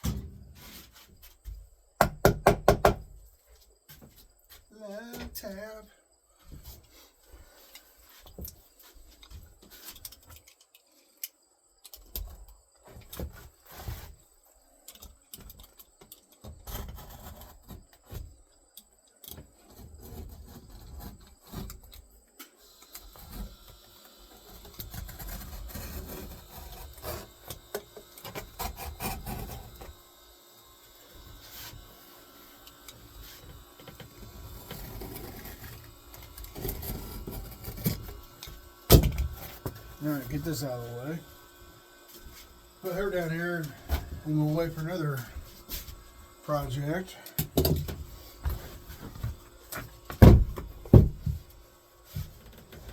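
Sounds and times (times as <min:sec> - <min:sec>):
tapping and knocking on wood: 0:02.0 - 0:03.1
wood scraping: 0:12.9 - 0:14.3, 0:16.4 - 0:18.3, 0:19.6 - 0:22.0, 0:24.4 - 0:30.0, 0:33.2 - 0:41.3, 0:42.1 - 0:52.9.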